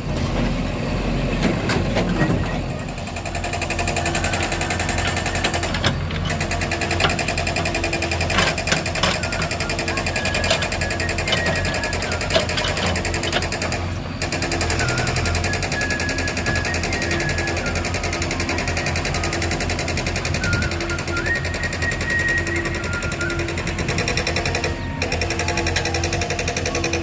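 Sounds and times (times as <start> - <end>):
diesel engine clattering: 0.0 - 27.0.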